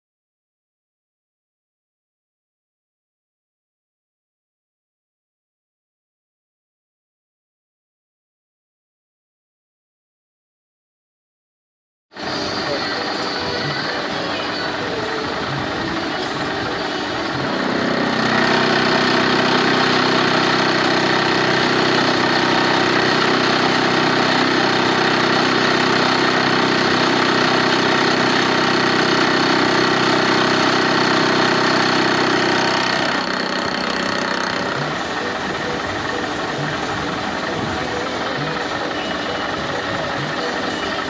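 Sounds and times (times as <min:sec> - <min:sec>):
milling machine humming: 0:12.2 - 0:41.0.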